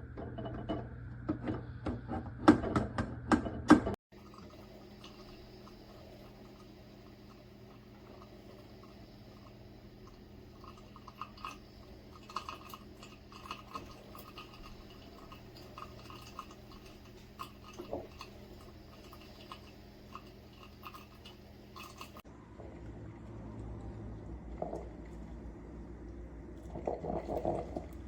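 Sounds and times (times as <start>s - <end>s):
low machine hum: 0.0s - 28.0s
coffee maker gurgling: 3.8s - 28.0s
liquid flowing: 4.1s - 22.9s.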